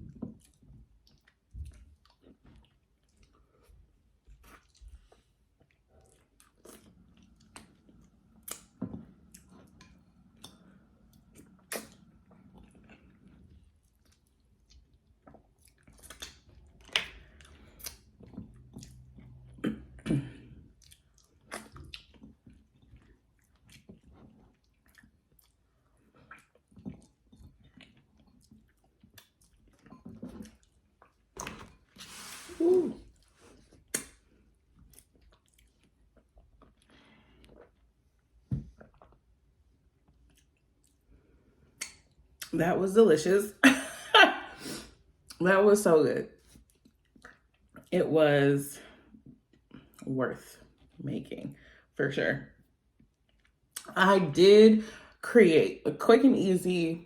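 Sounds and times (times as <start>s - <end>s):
person chewing food: 0.0s - 42.5s, 46.4s - 47.9s, 52.8s - 53.9s.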